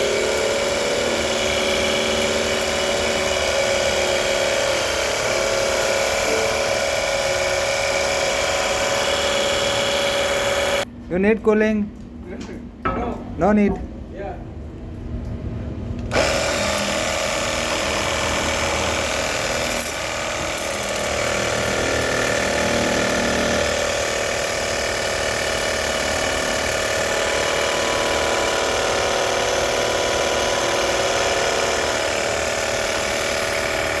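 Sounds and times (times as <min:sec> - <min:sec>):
air conditioner unit humming: 0:10.8 - 0:16.2.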